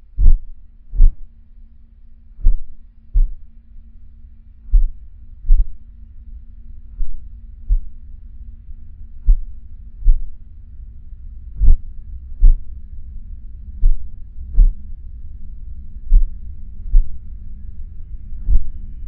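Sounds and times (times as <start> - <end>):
slow heartbeat thumps: 0.0 - 1.3, 2.3 - 3.6, 4.5 - 5.9, 6.9 - 8.5, 9.1 - 10.6, 11.4 - 17.3, 18.4 - 18.8
faint steady hum: 0.0 - 19.0.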